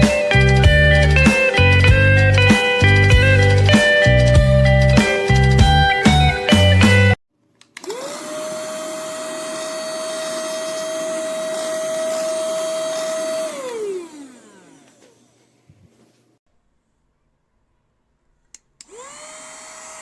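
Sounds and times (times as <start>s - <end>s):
vacuum cleaner switch click: 7.6s - 8.0s, 18.5s - 19.2s
vacuum cleaner motor whining: 7.8s - 16.0s, 18.8s - 20.0s.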